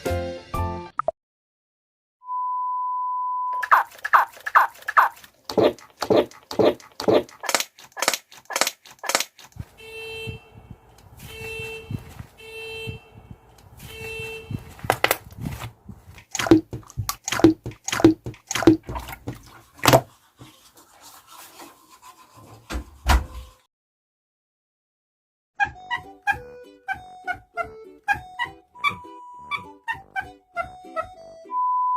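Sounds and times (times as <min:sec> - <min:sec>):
honking slime squeaks: 0:03.6 - 0:09.2, 0:25.6 - 0:31.3.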